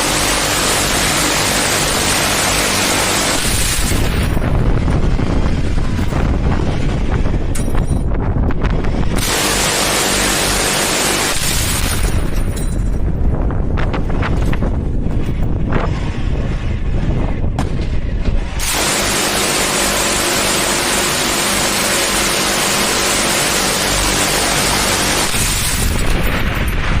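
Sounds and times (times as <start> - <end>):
rotary machine gun firing: 0.0 - 7.7, 8.7 - 12.9, 17.6 - 27.0.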